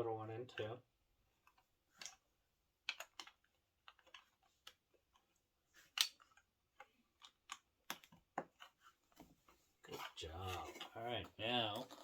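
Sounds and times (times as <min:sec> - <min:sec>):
plastic bricks clicking: 0:01.4 - 0:08.8.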